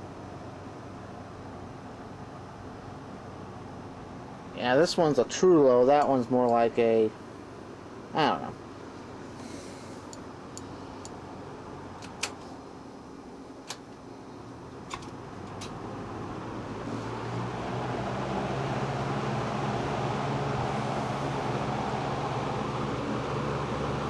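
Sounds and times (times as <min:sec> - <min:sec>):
electric fan running: 0:00.0 - 0:24.0
fan clicks: 0:04.7 - 0:07.0, 0:10.0 - 0:11.3, 0:11.9 - 0:12.6, 0:13.6 - 0:14.1, 0:14.7 - 0:15.9.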